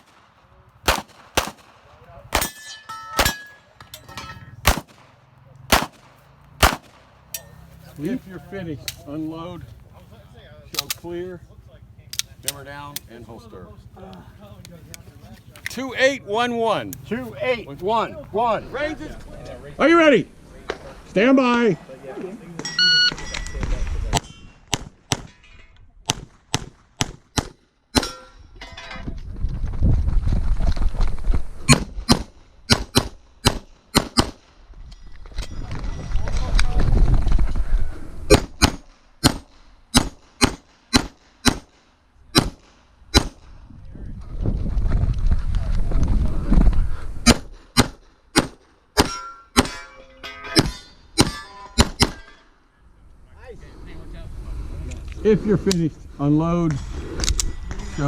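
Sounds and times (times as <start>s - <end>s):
pistol shots: 0.8s - 3.6s, 4.6s - 7.2s, 38.3s - 41.8s, 50.6s - 52.3s
metallic ringing of steel targets: 2.4s - 4.6s, 7.3s - 7.7s, 28.0s - 29.0s, 49.0s - 52.6s.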